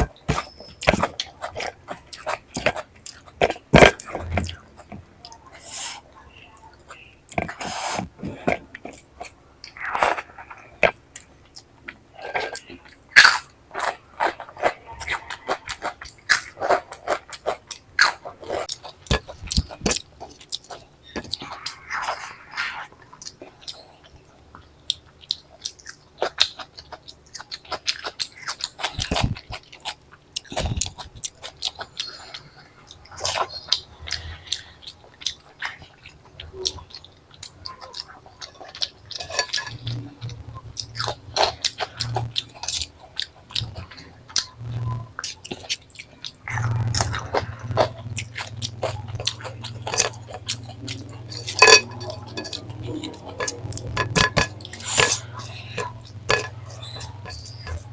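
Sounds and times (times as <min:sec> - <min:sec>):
person chewing food: 0:00.0 - 0:57.9
wet mouth sounds: 0:38.8 - 0:57.9.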